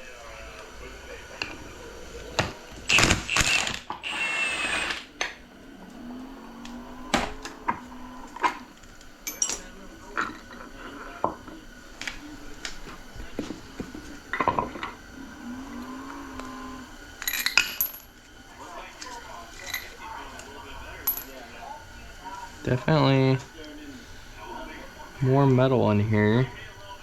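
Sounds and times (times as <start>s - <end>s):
metal parts clinking and knocking: 9.2s - 9.7s, 17.2s - 18.1s.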